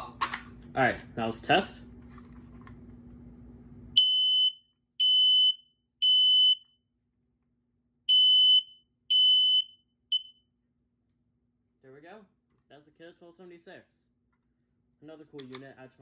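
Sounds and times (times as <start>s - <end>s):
smoke alarm beeping: 4.0s - 6.7s, 8.1s - 10.4s.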